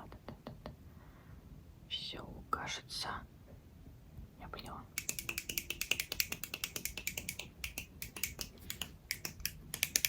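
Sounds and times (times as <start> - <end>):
crisp clicking taps: 5.0 - 10.0.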